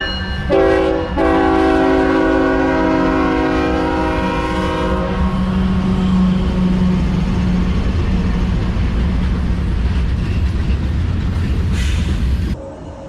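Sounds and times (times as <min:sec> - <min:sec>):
diesel locomotive rumble: 0:00.0 - 0:12.8
locomotive air horn blasts: 0:00.5 - 0:06.9.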